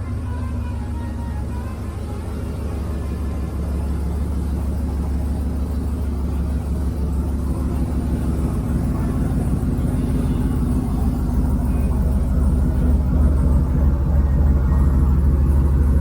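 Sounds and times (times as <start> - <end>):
truck engine droning: 0.0 - 16.0.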